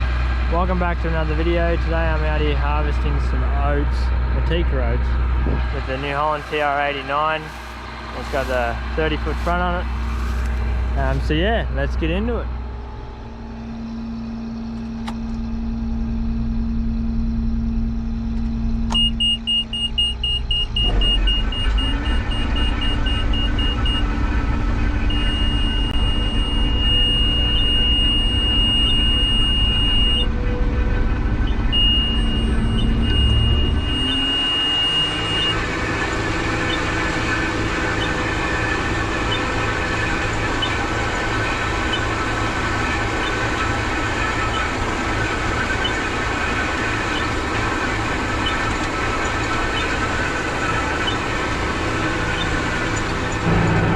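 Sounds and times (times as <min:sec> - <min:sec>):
combine harvester running: 0:00.0 - 0:53.9
high warning beeper: 0:04.4 - 0:12.2, 0:18.9 - 0:53.9.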